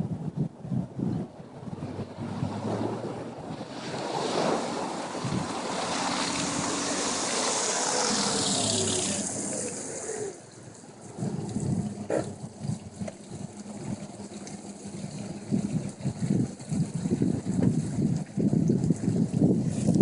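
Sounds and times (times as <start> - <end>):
water rushing and spraying: 1.2 - 20.0
car engine running: 1.8 - 17.8.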